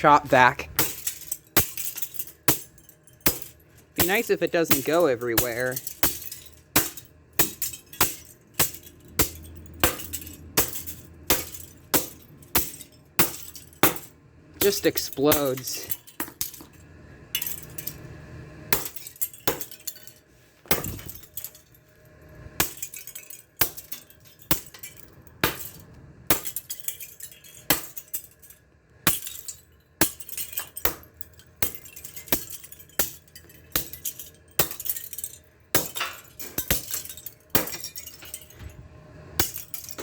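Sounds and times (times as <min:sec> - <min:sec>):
plastic shards clattering: 0:22.6 - 0:38.8.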